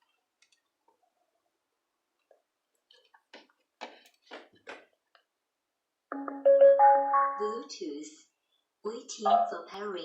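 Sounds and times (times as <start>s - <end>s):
faint clicks and scrapes: 2.2s - 5.3s.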